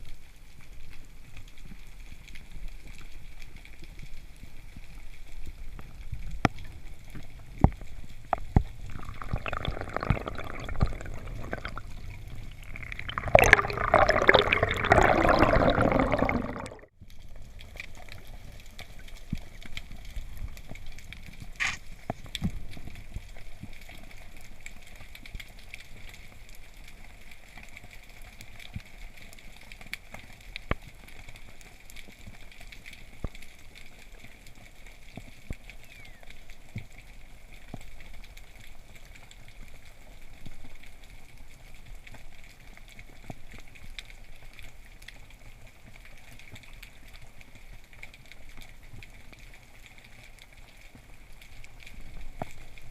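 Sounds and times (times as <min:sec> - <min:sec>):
underwater crackling clicks: 0:00.6 - 0:52.9
rush of bubbling water: 0:06.0 - 0:21.5.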